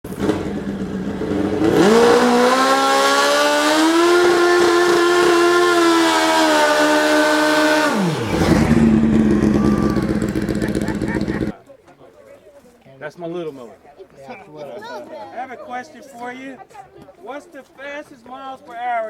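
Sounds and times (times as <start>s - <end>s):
vehicle motor revving: 0.1s - 11.5s.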